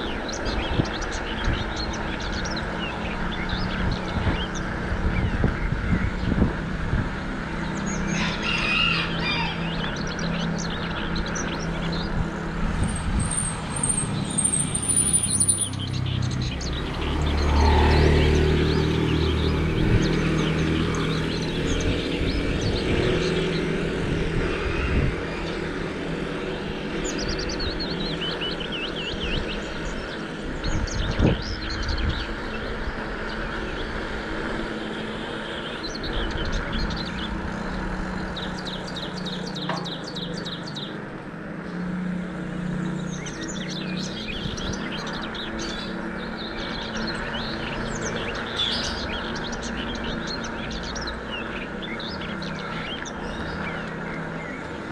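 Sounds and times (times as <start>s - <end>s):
low rumble of road noise: 0.0s - 54.9s
small birds chirping: 0.0s - 54.9s
vehicle passing: 6.6s - 28.6s.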